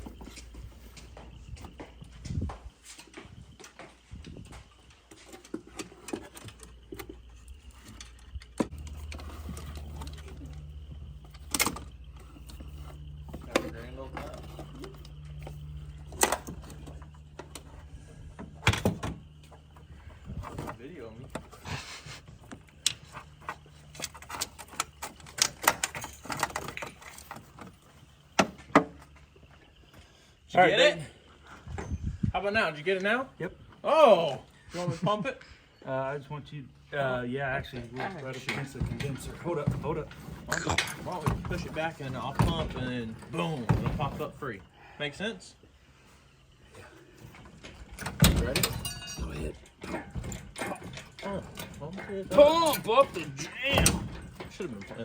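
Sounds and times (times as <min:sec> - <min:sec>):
steady low hum: 0:00.0 - 0:38.0
hand tools clicking and clinking: 0:04.5 - 0:29.1, 0:47.2 - 0:55.0.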